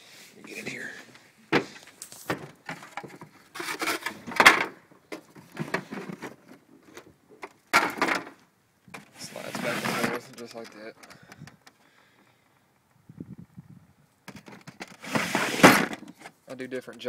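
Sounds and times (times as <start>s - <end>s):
toolbox tray sliding and scraping: 1.6s - 4.7s, 5.4s - 6.6s, 9.0s - 10.4s, 14.8s - 16.2s.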